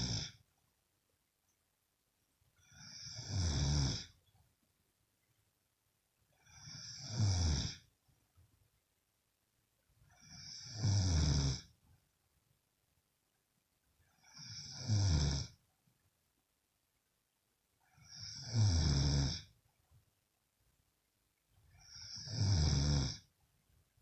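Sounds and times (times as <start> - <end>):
woman snoring loudly: 0.0 - 0.4, 2.7 - 4.1, 6.5 - 7.8, 10.4 - 11.7, 14.4 - 15.5, 18.0 - 19.5, 21.8 - 23.2.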